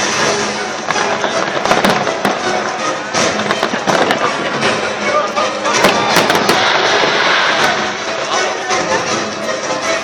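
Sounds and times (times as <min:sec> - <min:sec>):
fireworks bangs and cracks: 0:00.0 - 0:09.4
music: 0:00.0 - 0:10.0
crackling hiss: 0:05.8 - 0:08.6.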